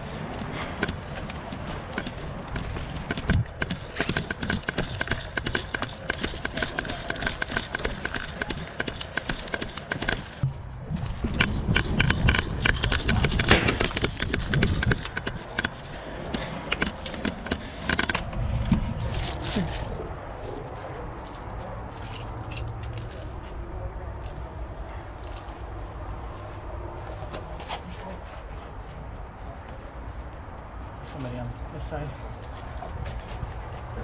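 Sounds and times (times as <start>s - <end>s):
gear rattling: 0.0s - 20.0s
footsteps: 25.2s - 34.0s.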